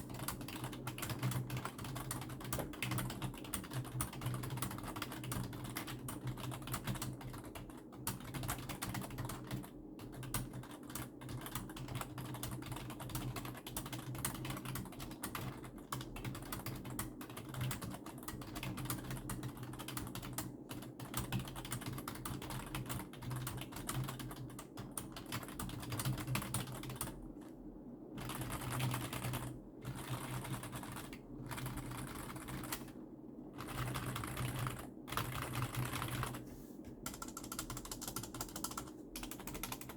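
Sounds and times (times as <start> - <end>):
fast typing on a keyboard: 0.0 - 27.2, 28.2 - 33.0, 33.6 - 36.4, 37.0 - 39.9.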